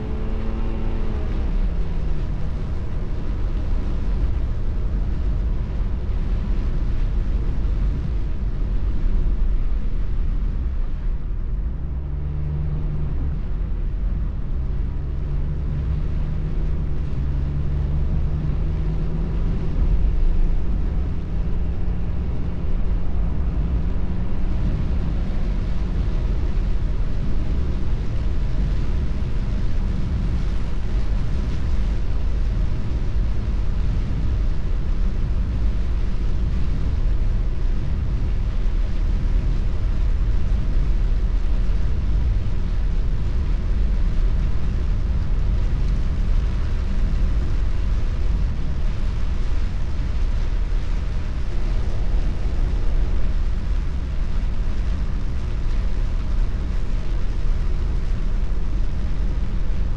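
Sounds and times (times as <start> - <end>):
rain and tyre spray hiss: 0.0 - 59.9
road and engine rumble: 0.0 - 59.9.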